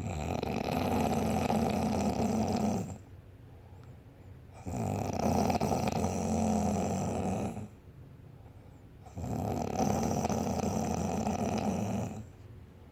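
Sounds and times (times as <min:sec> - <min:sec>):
person snoring: 0:09.1 - 0:12.2.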